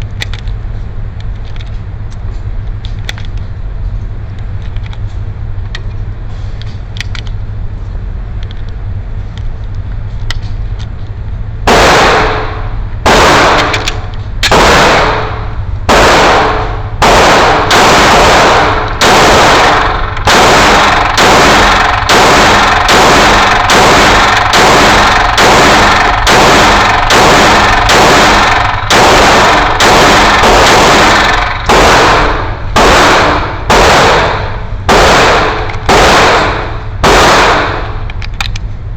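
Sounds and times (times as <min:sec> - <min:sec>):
low steady rumble: 0:00.0 - 0:38.9
pistol shots: 0:11.7 - 0:38.1.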